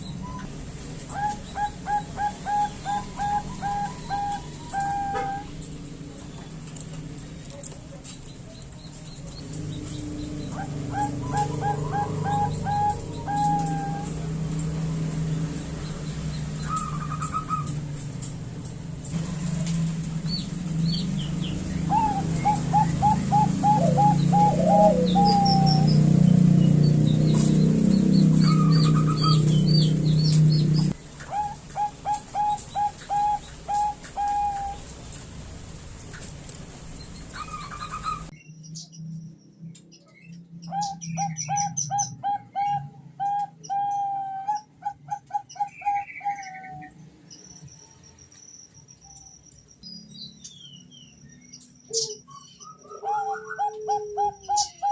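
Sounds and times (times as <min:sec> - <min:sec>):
dove cooing: 0:00.3 - 0:05.7, 0:09.8 - 0:15.2, 0:15.8 - 0:17.9, 0:21.0 - 0:35.0, 0:40.7 - 0:46.9, 0:51.9 - 0:54.9
loud low hum: 0:09.4 - 0:31.0.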